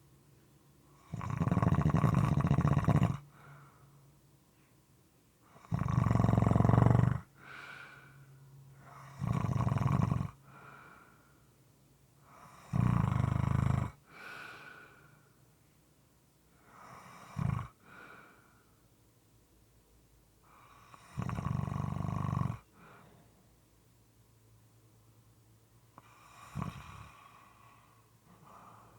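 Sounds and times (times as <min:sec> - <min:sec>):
person snoring: 0:01.0 - 0:03.2, 0:05.6 - 0:07.9, 0:08.9 - 0:10.4, 0:12.4 - 0:14.6, 0:16.8 - 0:17.8, 0:26.0 - 0:28.9
soft breath: 0:03.3 - 0:04.9, 0:07.3 - 0:09.0, 0:10.4 - 0:11.6, 0:14.0 - 0:15.5, 0:16.5 - 0:18.9, 0:22.7 - 0:23.6, 0:25.9 - 0:28.9.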